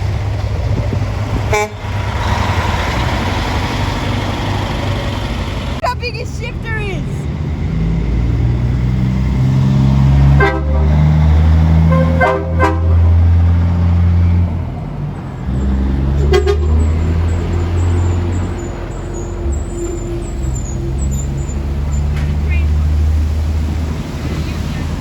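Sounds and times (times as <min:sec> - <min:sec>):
truck engine rumbling: 0:00.0 - 0:25.0
truck horn honking: 0:01.5 - 0:02.1, 0:10.1 - 0:13.5, 0:16.1 - 0:21.8.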